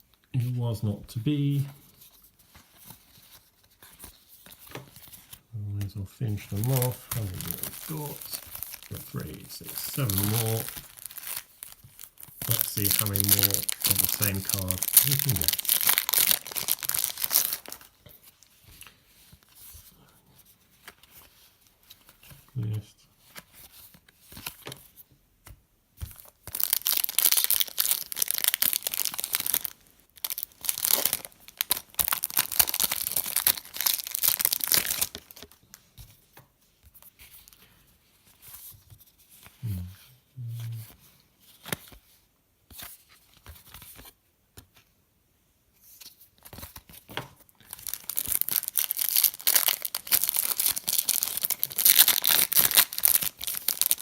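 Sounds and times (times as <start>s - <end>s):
card pack wrappers tearing and crinkling: 6.2s - 18.4s, 26.1s - 35.7s, 46.5s - 54.0s.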